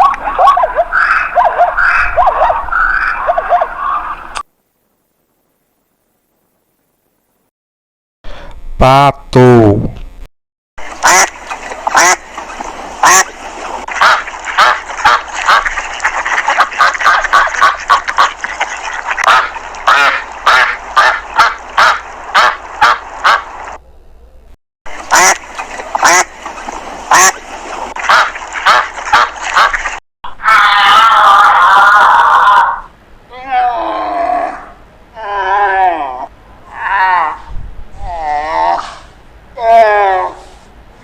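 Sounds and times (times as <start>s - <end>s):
duck quacking: 0.0s - 4.2s, 11.0s - 12.3s, 13.0s - 13.3s, 13.9s - 23.5s, 25.1s - 26.3s, 27.1s - 27.4s, 28.0s - 30.0s.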